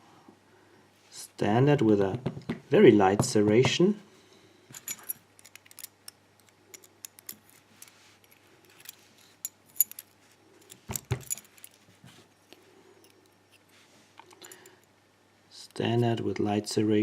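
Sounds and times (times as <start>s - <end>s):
small metal pins clicking: 4.8s - 11.8s.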